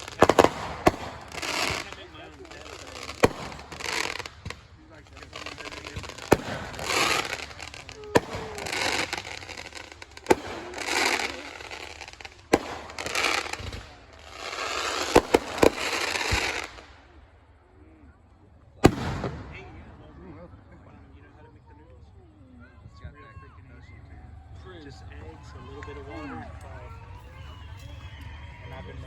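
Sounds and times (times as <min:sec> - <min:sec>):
fireworks bangs: 0:00.0 - 0:17.7, 0:18.7 - 0:21.2
rushing hiss of fireworks: 0:00.0 - 0:21.8.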